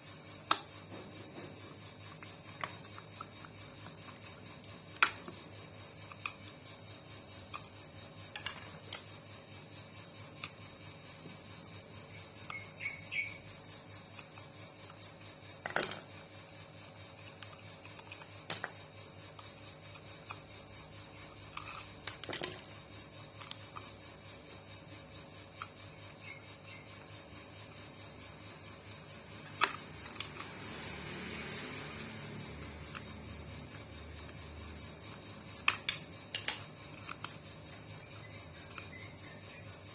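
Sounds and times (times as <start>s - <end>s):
faint steady hum: 0.0s - 39.9s
clinks and knocks of metal tools: 35.6s - 36.9s.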